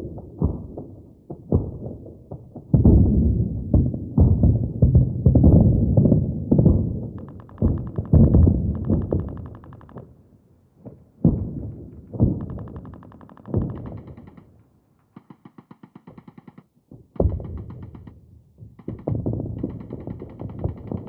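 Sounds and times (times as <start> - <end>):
rapid automatic gunfire: 7.2 - 10.0, 12.2 - 14.5, 15.2 - 18.2, 18.8 - 21.0.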